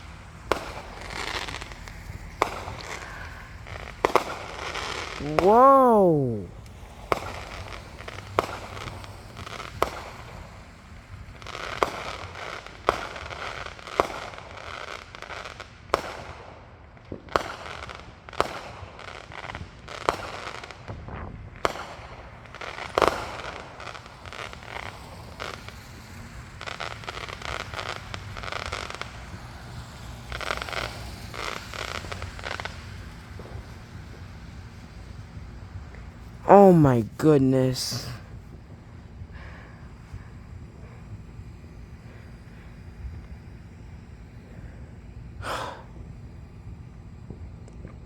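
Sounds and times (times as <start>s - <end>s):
fireworks crackling: 36.6s - 38.2s.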